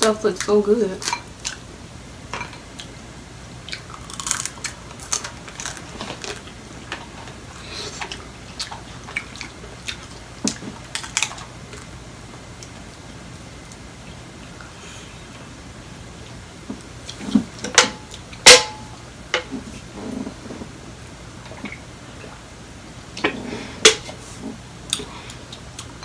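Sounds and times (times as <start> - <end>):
chewing: 3.7 - 11.9
shells cracking and crunching: 3.8 - 6.4.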